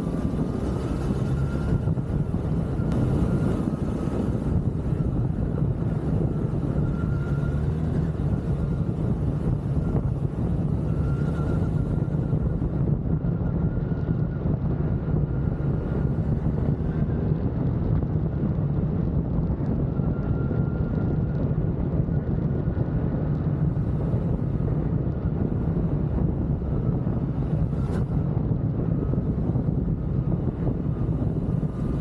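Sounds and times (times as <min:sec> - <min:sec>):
wind noise on microphone: 0:00.0 - 0:32.0.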